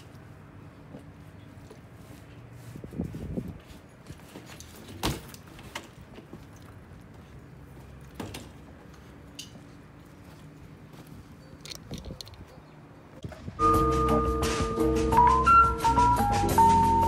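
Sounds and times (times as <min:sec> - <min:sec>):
handling noise clicks and rustling: 0:11.6 - 0:12.8
background music: 0:13.4 - 0:17.0.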